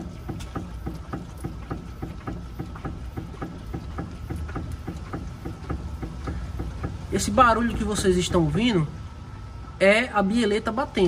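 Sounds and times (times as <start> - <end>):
car suspension link knocking: 0.0 - 8.4.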